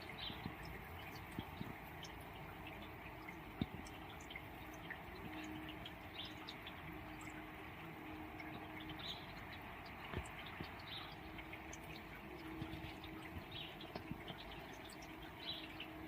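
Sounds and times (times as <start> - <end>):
drops dripping and ticking: 0.0 - 16.0
steady rain: 0.0 - 16.0.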